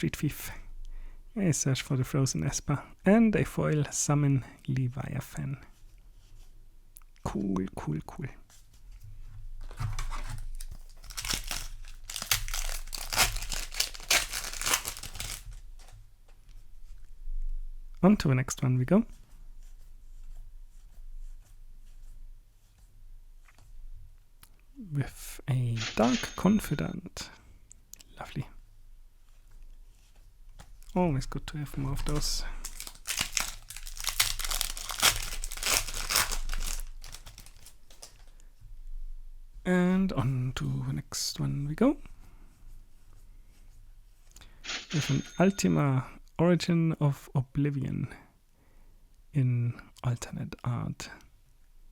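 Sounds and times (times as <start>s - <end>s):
foil wrapper tearing and crinkling: 10.4s - 15.6s, 32.0s - 38.2s.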